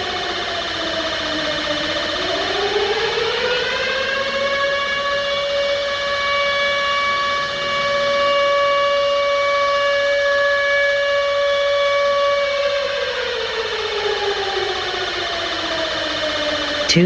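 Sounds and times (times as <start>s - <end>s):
air-raid siren: 0.0s - 17.0s.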